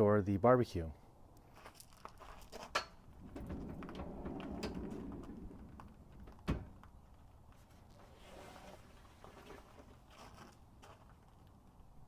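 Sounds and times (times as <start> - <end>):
storage drawer rumbling on slides: 3.2 - 6.8.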